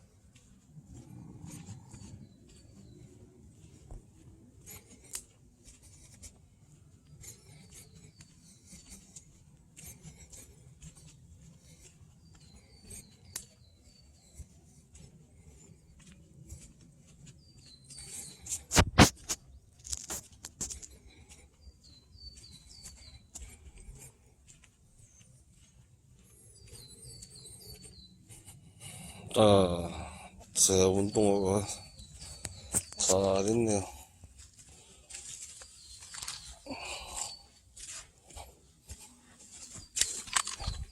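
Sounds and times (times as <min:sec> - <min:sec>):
small bird singing: 0:01.2 - 0:03.8, 0:11.0 - 0:16.2, 0:17.1 - 0:18.7, 0:20.8 - 0:24.1, 0:24.9 - 0:34.1, 0:34.7 - 0:37.9.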